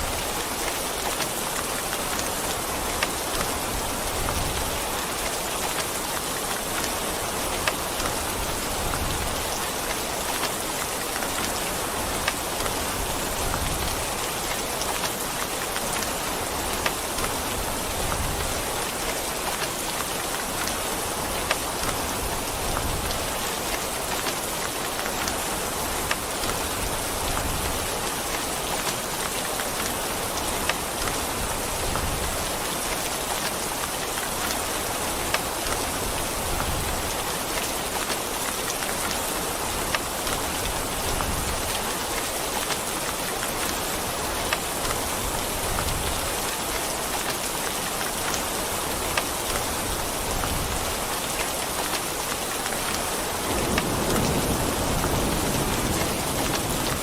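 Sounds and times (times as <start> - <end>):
heavy rain: 0.0 - 57.0
thunder rumbling: 53.4 - 57.0.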